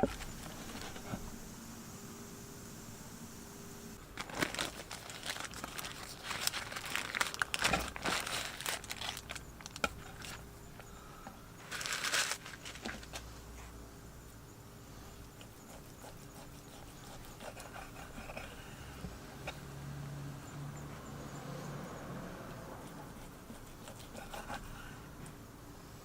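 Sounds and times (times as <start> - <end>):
crinkling and rustling handling noise: 0.0 - 1.4, 4.0 - 13.8.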